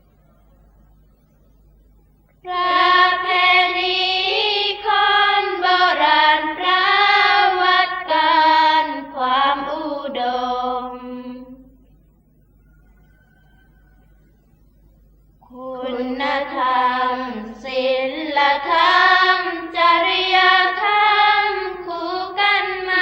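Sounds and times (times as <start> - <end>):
high voice chant-singing: 2.4 - 11.7, 15.4 - 23.0.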